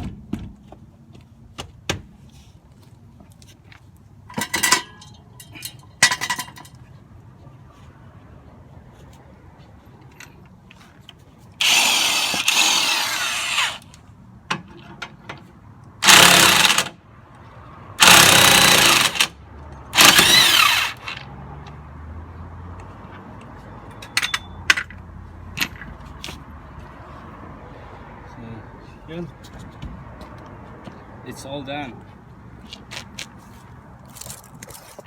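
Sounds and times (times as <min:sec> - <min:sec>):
power tool running: 0:11.6 - 0:13.8, 0:16.0 - 0:16.9, 0:18.0 - 0:19.3, 0:20.0 - 0:21.2.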